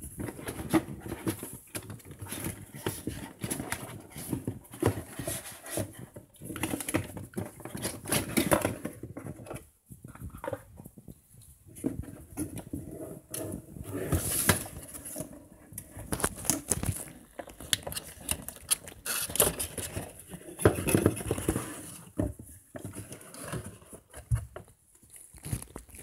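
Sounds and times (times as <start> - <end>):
packaging rustling: 14.1 - 21.6, 25.0 - 26.0.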